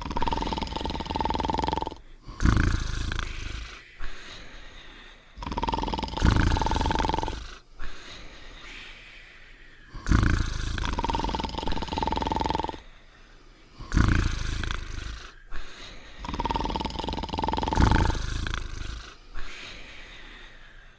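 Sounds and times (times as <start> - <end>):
cartoon snoring with whistle: 0.0 - 4.1, 5.4 - 7.6, 9.9 - 12.8, 13.8 - 15.5, 16.2 - 19.8.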